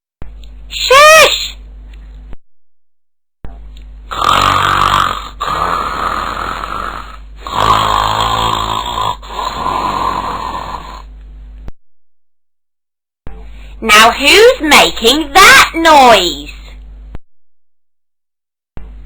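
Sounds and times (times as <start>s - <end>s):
man snoring: 4.1s - 11.1s.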